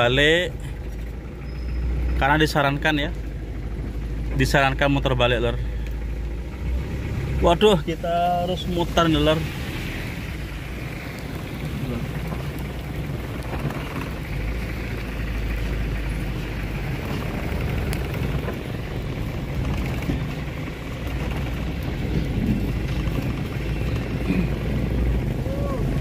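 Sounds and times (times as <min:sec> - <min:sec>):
vehicle engine and road noise: 0:00.0 - 0:26.0
wind rumbling on microphone: 0:08.7 - 0:26.0.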